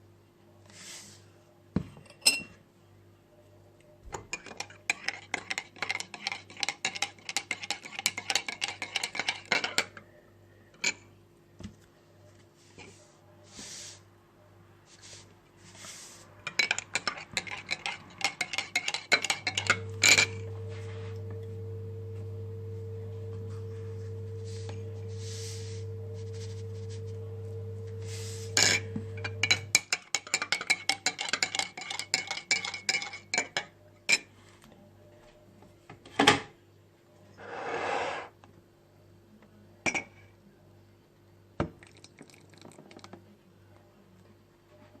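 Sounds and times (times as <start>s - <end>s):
metal spoon clinking on cup: 16.4s - 20.5s, 28.6s - 34.3s
small appliance humming: 19.6s - 29.7s.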